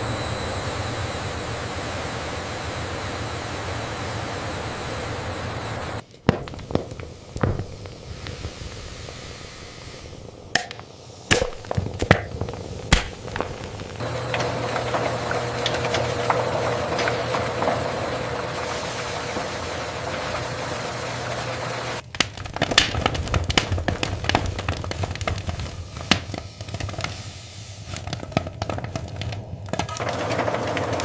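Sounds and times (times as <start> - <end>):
factory machinery hum: 0.0 - 6.1, 9.5 - 22.0, 29.3 - 31.0
sharp pops and knocks: 6.1 - 9.2, 10.5 - 14.0, 22.0 - 27.2.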